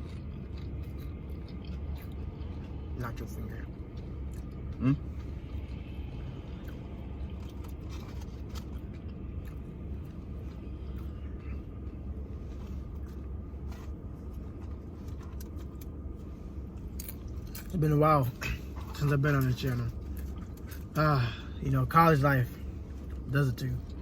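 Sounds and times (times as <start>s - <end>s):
chips being bitten and chewed: 0.0s - 5.8s, 6.5s - 11.9s
low rumble: 0.0s - 19.2s.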